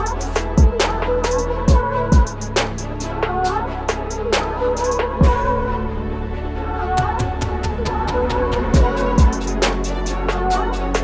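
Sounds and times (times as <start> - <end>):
deep bass drum: 0.0 - 3.0, 3.9 - 5.6, 7.0 - 11.0
electronic hip hop beat: 0.0 - 3.1, 8.8 - 11.0
sustained bass: 0.0 - 11.0.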